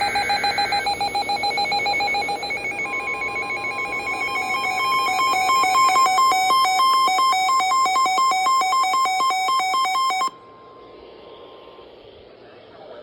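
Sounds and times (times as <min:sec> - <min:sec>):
buzzy data burst: 0:00.0 - 0:10.2
two-pitch alternating beeps: 0:00.0 - 0:10.4
fast warbling alarm: 0:00.0 - 0:10.8
steady warning alarm tone: 0:00.0 - 0:10.8.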